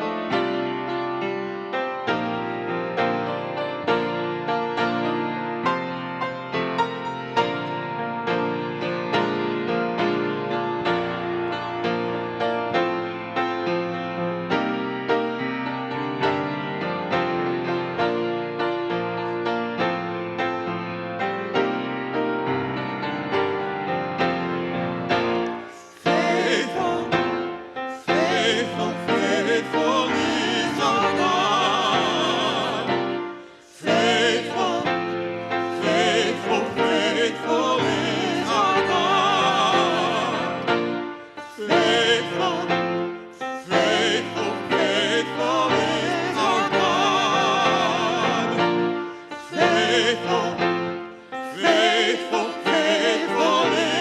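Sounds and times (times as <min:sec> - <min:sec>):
held instrumental accompaniment: 0:00.0 - 0:54.0
person singing with vibrato: 0:25.6 - 0:35.0, 0:35.7 - 0:54.0.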